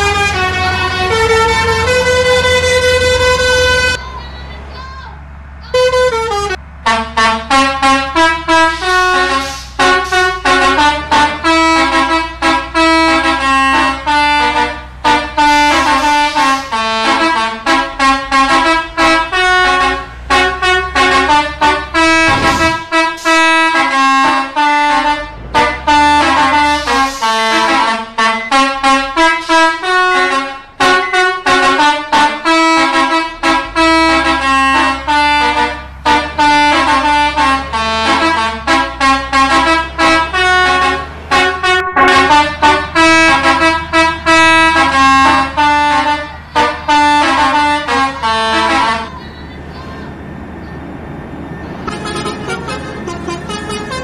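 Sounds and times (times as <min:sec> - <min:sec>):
multi-tone musical bus horn: 0:00.0 - 0:54.0.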